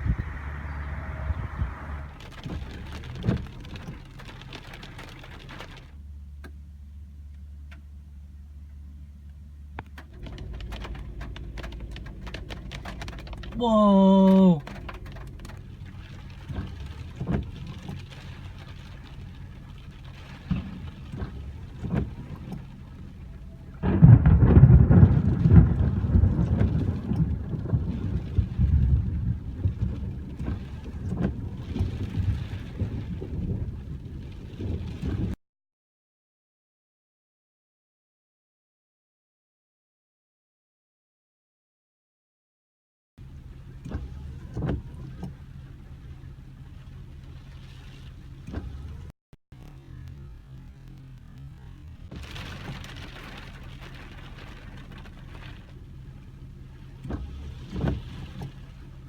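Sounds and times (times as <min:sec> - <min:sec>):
thunder rumbling: 0:00.0 - 0:04.8, 0:16.0 - 0:35.4
rain falling: 0:00.0 - 0:06.0, 0:09.9 - 0:35.4, 0:43.2 - 0:59.0
car engine idling: 0:00.0 - 0:34.6, 0:43.2 - 0:59.0.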